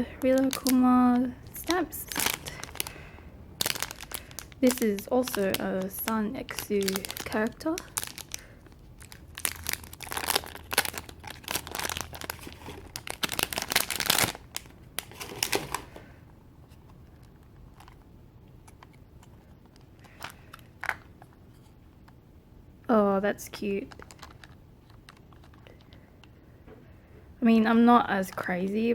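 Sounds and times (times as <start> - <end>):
packaging crinkling and tearing: 0.1 - 16.1, 17.0 - 21.6, 23.6 - 26.0.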